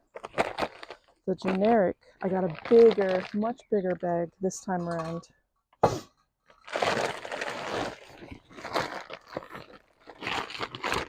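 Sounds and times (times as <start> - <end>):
bag packaging crinkling: 0.0 - 3.6, 6.5 - 11.0
seed shifting in bag: 0.2 - 3.4, 6.6 - 11.0.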